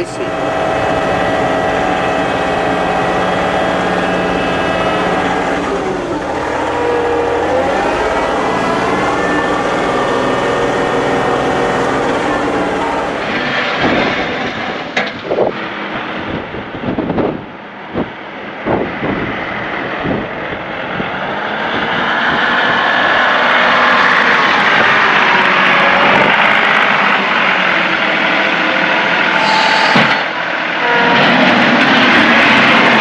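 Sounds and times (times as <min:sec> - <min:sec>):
tractor diesel engine running: 0:00.0 - 0:13.5.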